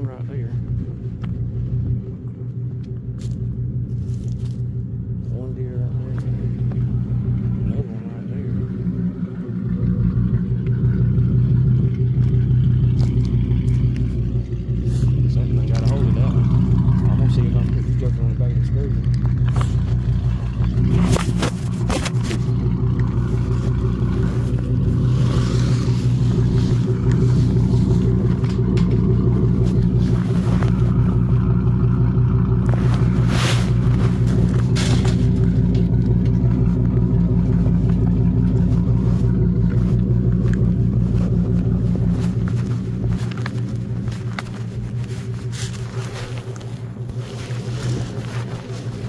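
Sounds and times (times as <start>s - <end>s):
engine idling: 0.0s - 49.0s
sharp knocks and clatter: 33.8s - 37.1s.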